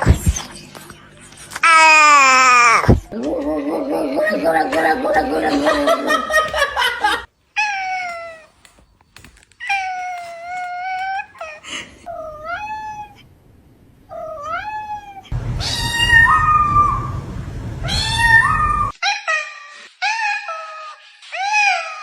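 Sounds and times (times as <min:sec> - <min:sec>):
low rumbling noise: 0:03.1 - 0:07.2, 0:15.3 - 0:18.9
cat meowing: 0:14.1 - 0:17.1, 0:17.8 - 0:18.9.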